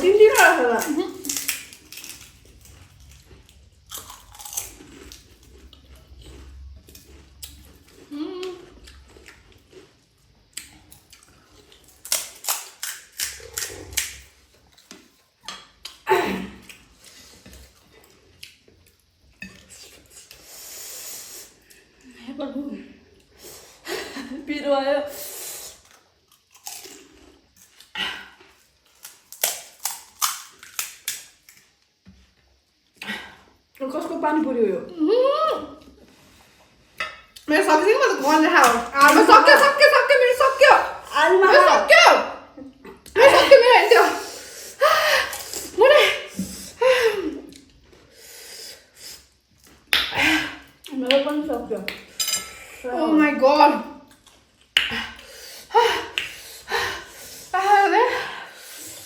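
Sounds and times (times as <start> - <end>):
people chewing crisp food: 0.0 - 22.2, 25.1 - 33.8, 44.1 - 52.8, 54.0 - 59.0
crisp shells cracking and crunching: 0.8 - 5.7, 28.9 - 31.4.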